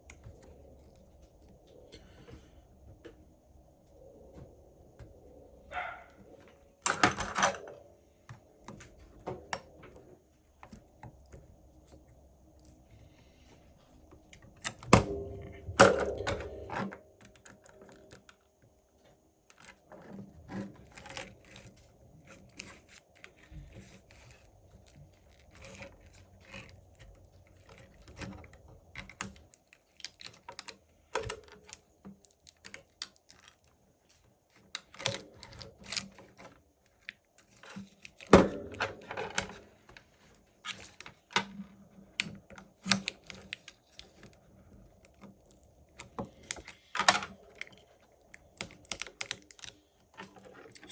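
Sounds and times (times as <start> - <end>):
tools clicking and rustling on workbench: 6.8 - 7.8.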